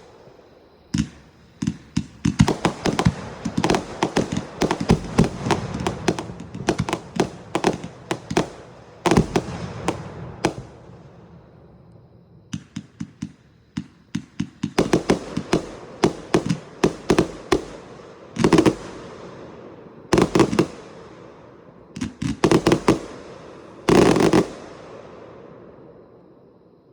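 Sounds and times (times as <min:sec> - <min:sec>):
fireworks banging: 0:00.9 - 0:11.3, 0:12.5 - 0:18.9, 0:21.9 - 0:23.2, 0:23.8 - 0:24.6.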